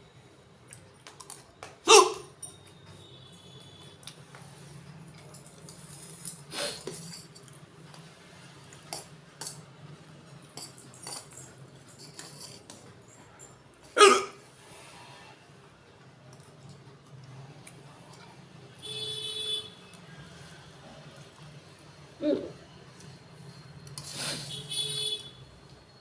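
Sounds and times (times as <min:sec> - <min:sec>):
person hiccuping: 0:01.9 - 0:02.3, 0:14.0 - 0:14.4.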